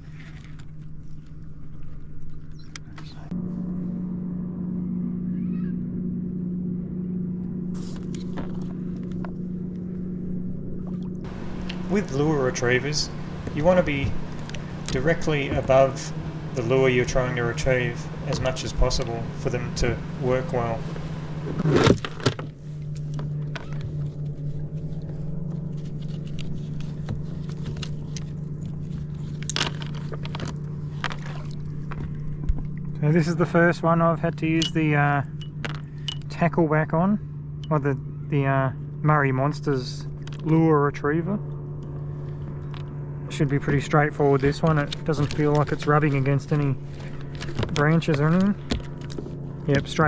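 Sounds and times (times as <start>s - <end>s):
light handling clicks: 11.3s - 21.7s
kayak motor humming: 11.3s - 21.9s.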